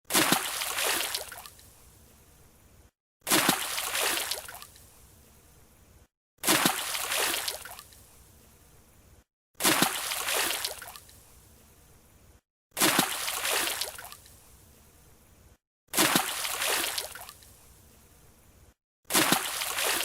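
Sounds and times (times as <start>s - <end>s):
diver splashing into pool: 0.1s - 1.2s, 3.3s - 4.5s, 6.4s - 7.7s, 9.6s - 10.9s, 12.8s - 14.0s, 16.0s - 17.2s, 19.1s - 20.0s
water sloshing: 19.1s - 20.0s.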